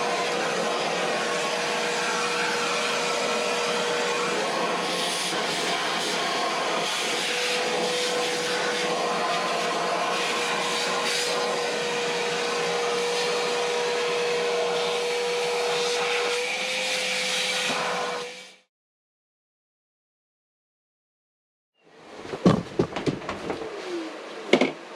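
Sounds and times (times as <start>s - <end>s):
power tool motor whine: 0.0s - 18.7s.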